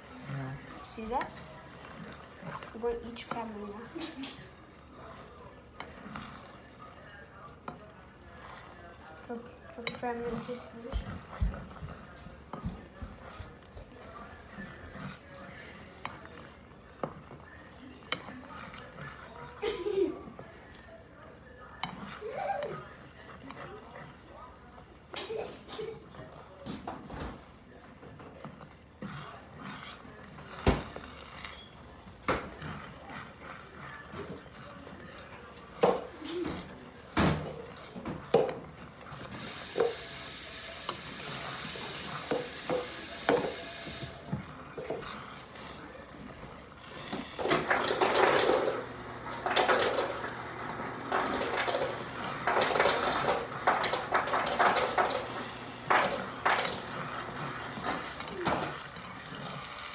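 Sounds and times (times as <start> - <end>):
utensil scraping a frying pan: 29.0 - 31.8
pans and utensils clinking: 35.8 - 59.9
tap water running: 39.3 - 45.6, 46.8 - 59.9.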